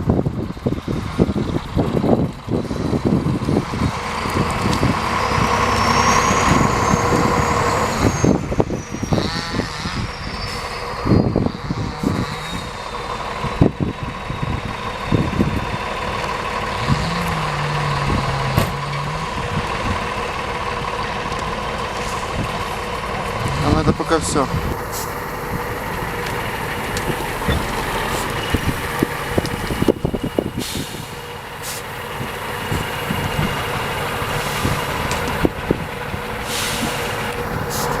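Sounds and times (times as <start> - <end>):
tractor diesel engine running: 0.0 - 38.0
knocks and clunks: 15.2 - 20.3.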